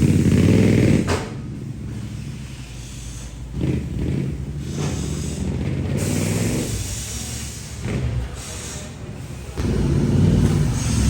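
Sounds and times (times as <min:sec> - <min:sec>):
motor vehicle engine running: 0:00.0 - 0:11.0
hiss: 0:04.6 - 0:09.6.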